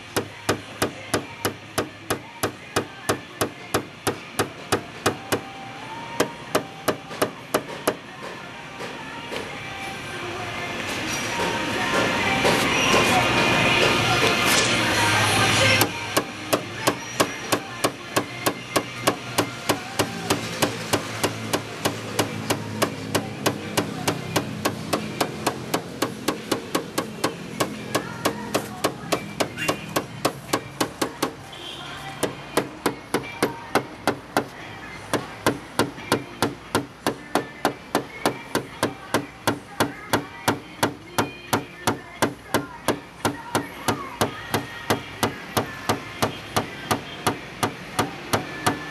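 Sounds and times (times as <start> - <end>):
hammer tapping metal punch: 15.7 - 31.4.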